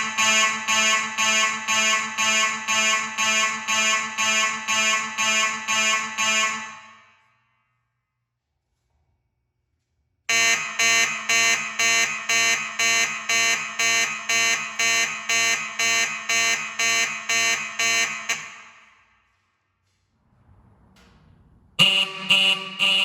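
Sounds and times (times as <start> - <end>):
fire alarm horns pulsing: 0.0 - 7.4, 10.3 - 19.6, 21.8 - 23.0.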